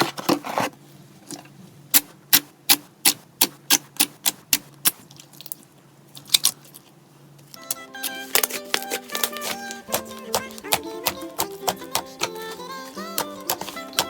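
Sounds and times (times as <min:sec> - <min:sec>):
music with plucked notes: 0:07.6 - 0:14.0.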